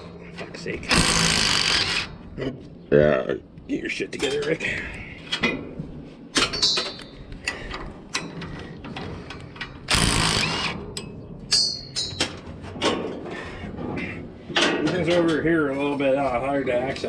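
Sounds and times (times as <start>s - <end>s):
loud rasping noise: 0.9s - 2.2s
metal tools clanking: 4.2s - 9.8s, 10.9s - 13.4s, 14.0s - 15.9s
ringing metallic clinks: 6.4s - 7.2s, 11.0s - 12.3s.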